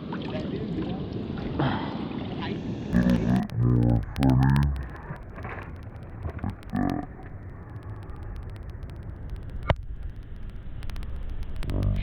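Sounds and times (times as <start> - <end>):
steady low rumble: 2.9 - 12.0
low falling vocal call: 3.0 - 8.5.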